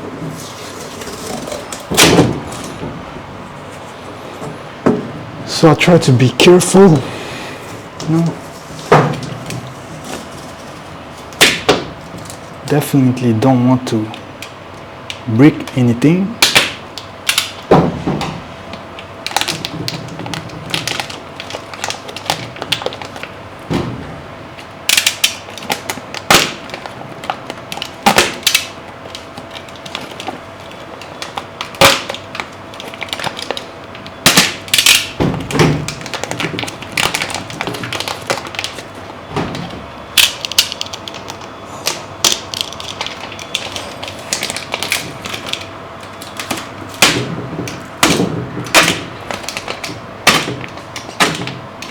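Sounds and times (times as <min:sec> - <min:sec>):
packaging being handled and cut: 0:18.7 - 0:23.4, 0:24.6 - 0:51.9.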